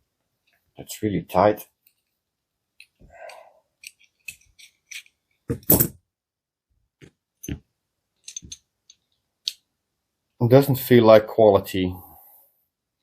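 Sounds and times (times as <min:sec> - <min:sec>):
small metal and plastic parts clicking: 0:03.8 - 0:05.3.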